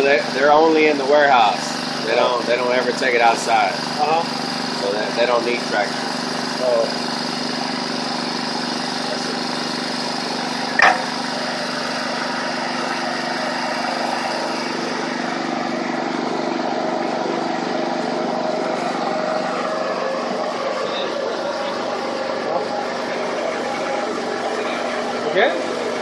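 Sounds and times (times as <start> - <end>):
machine humming: 5.8 - 26.0
sharp knock: 10.8 - 11.2.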